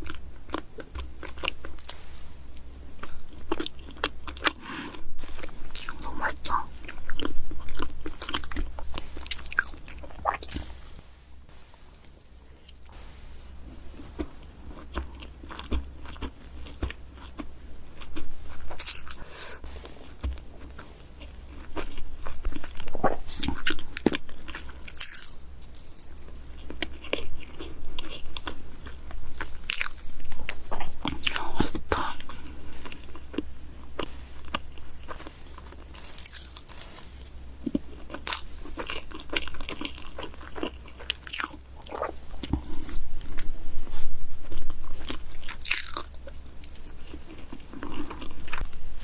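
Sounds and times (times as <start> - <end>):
person chewing crunchy cake: 0.0 - 11.0, 13.8 - 48.9.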